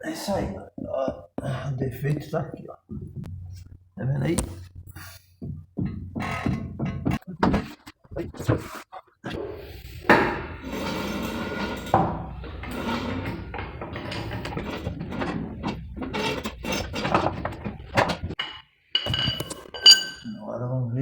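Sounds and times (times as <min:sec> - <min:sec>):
metal tools clinking and rattling: 0:10.1 - 0:20.4
ringing metal clink: 0:18.4 - 0:20.4.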